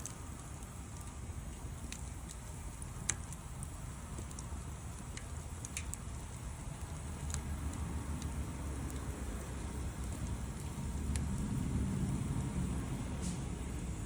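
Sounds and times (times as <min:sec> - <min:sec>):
wood fire crackling: 0:00.0 - 0:14.0.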